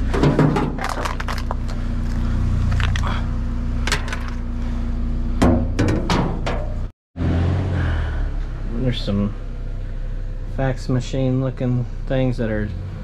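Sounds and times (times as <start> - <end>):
clatters of junk being handled: 0.0 - 3.1, 3.8 - 4.5
vehicle engine idling: 0.0 - 6.9, 7.6 - 13.0.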